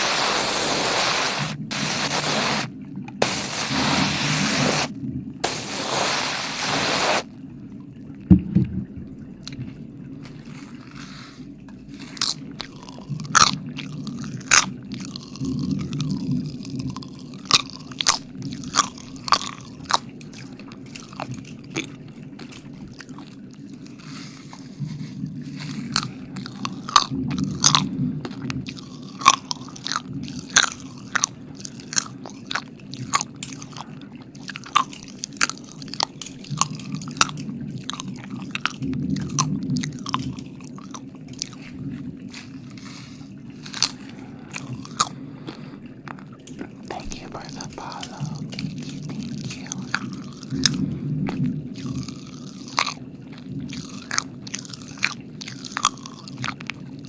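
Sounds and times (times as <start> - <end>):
low steady hum: 0.0 - 57.0
wet mouth clicks and smacks: 25.6 - 53.0, 53.7 - 56.8.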